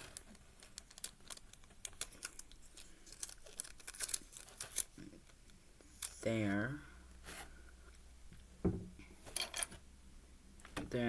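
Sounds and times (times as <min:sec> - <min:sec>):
crinkling: 0:00.0 - 0:06.6
plastic pieces clicking: 0:00.1 - 0:05.4.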